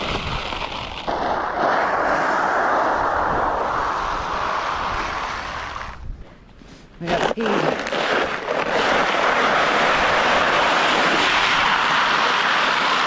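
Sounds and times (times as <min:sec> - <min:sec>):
sled scraping over ice: 0:00.0 - 0:06.3, 0:07.0 - 0:13.0.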